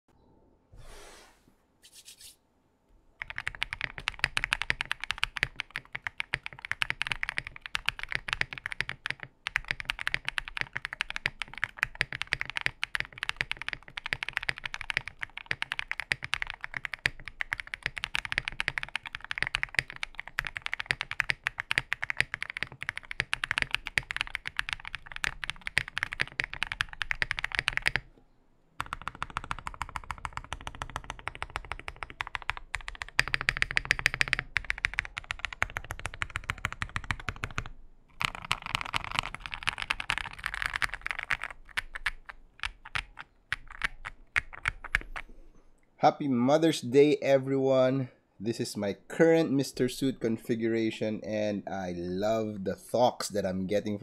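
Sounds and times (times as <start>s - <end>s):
typing on mechanical keyboard: 3.2s - 28.0s, 28.8s - 45.3s.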